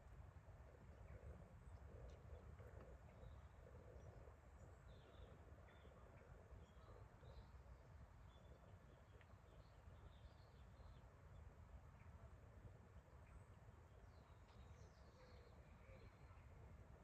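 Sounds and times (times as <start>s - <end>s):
faint bird chirps: 13.2s - 17.0s.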